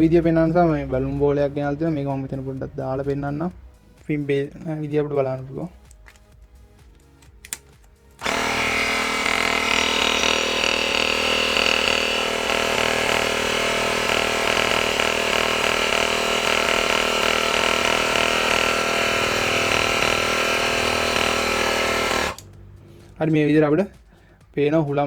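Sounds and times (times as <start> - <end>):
air compressor running: 8.2 - 23.2.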